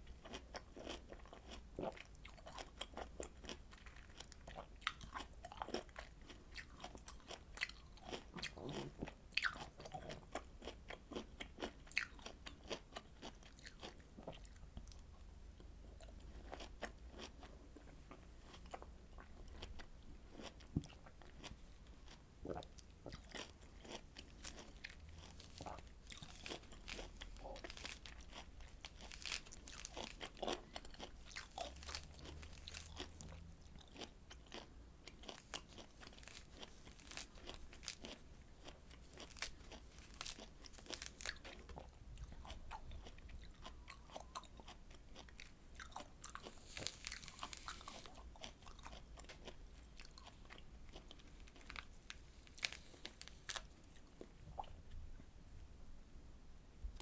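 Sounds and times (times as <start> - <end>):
wet bites and chewing: 22.5 - 54.8.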